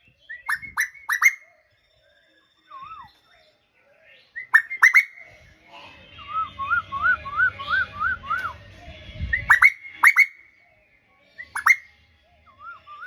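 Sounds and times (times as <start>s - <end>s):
bird whistled song: 0.0s - 1.7s, 2.6s - 13.0s
bird sharp down-slurred calls: 0.4s - 1.4s, 4.4s - 8.6s, 9.3s - 10.4s, 11.4s - 11.9s.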